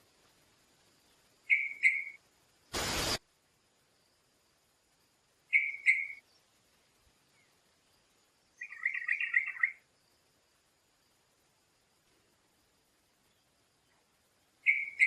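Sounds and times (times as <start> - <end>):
faint high-pitched whine: 0.0 - 15.0
songbird calling: 1.0 - 2.2, 5.5 - 6.5, 8.5 - 9.9, 13.2 - 15.0.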